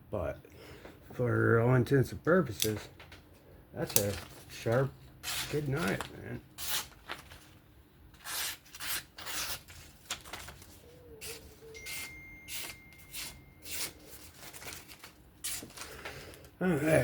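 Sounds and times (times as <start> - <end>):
faint high tone: 10.9 - 13.8.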